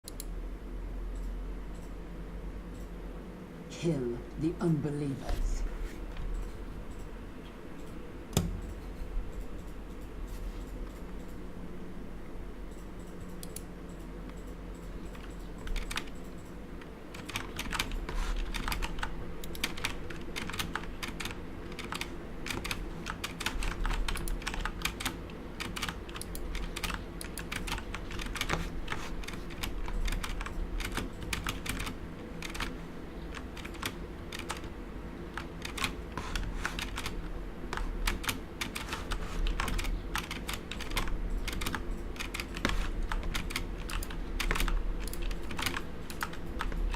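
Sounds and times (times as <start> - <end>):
mechanical keyboard typing: 12.7 - 46.9.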